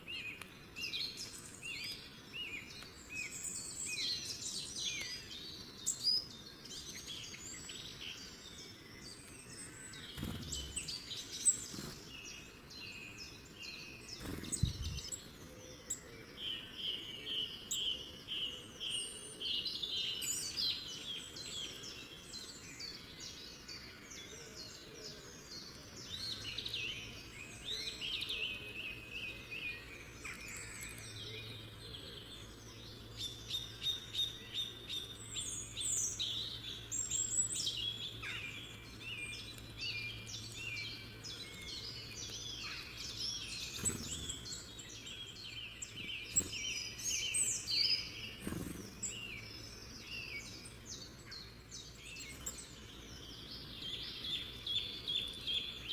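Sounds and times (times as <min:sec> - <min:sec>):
songbirds chirping and trilling: 0:00.0 - 0:55.9.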